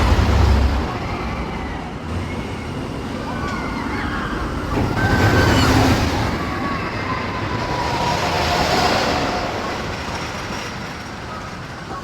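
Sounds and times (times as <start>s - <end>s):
roller coaster rumbling on track: 0.0s - 12.0s.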